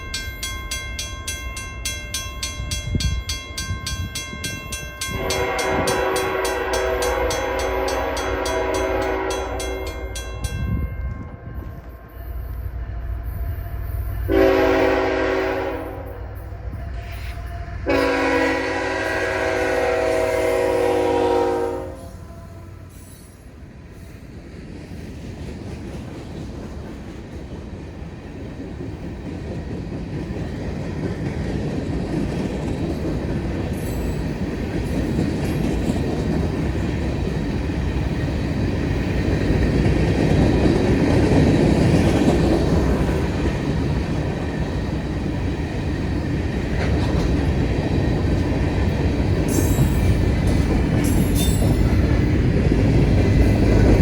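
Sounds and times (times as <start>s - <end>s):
diesel freight train rumbling: 0.0s - 54.0s
wheels clicking over rail joints: 24.4s - 54.0s.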